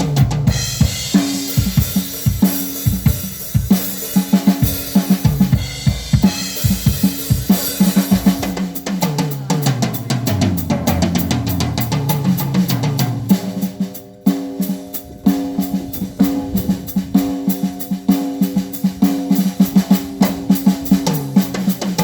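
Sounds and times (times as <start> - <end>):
bass drum: 0.0 - 13.8
bass notes: 9.6 - 13.7, 14.9 - 17.5.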